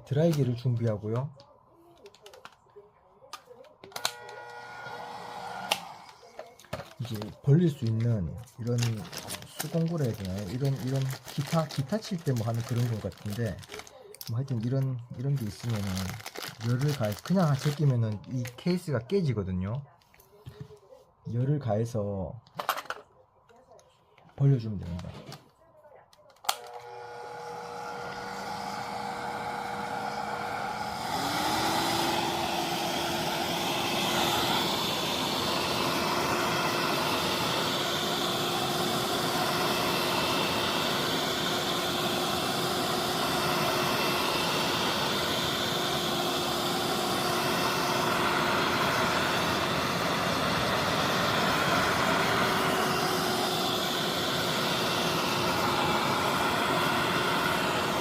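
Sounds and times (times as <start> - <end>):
hair dryer blowing: 3.9 - 8.0, 8.7 - 14.7, 26.5 - 58.0.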